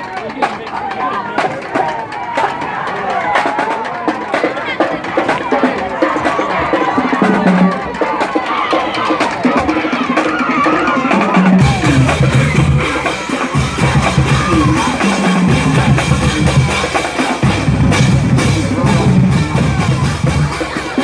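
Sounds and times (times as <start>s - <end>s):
music with drum beat: 0.0s - 21.0s
heavy bass line: 11.2s - 21.0s.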